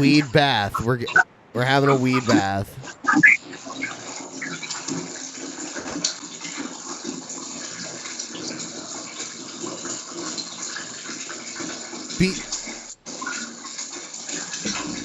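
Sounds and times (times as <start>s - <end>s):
tap water running into bathtub: 3.5s - 15.0s.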